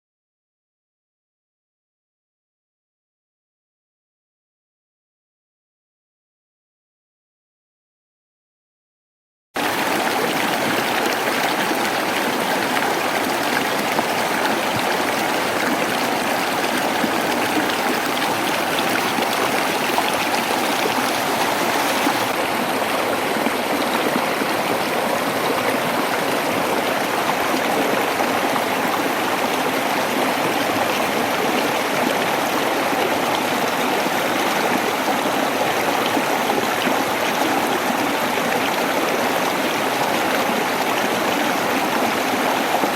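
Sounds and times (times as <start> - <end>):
waterfall rushing: 9.6 - 38.4.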